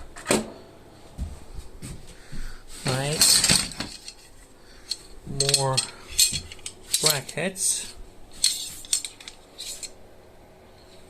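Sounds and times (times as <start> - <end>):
metal brackets clinking: 2.9 - 10.0.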